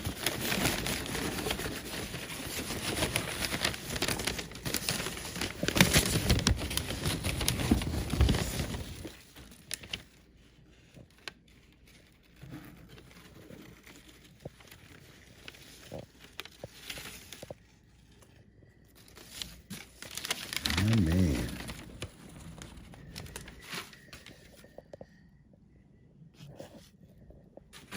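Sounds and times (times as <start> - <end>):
packaging crinkling and rustling: 0.0 - 24.8.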